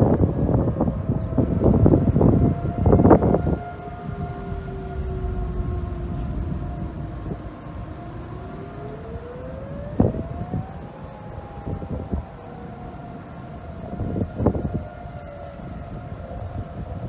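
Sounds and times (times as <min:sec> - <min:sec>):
tornado sirens wailing: 0:00.0 - 0:17.0
low rumble: 0:01.3 - 0:10.4.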